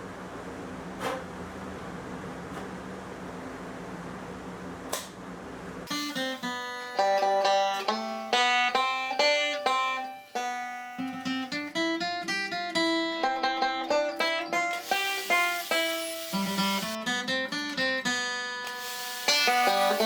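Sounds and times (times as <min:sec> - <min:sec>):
plucked string music: 0:05.9 - 0:18.7, 0:19.3 - 0:20.0.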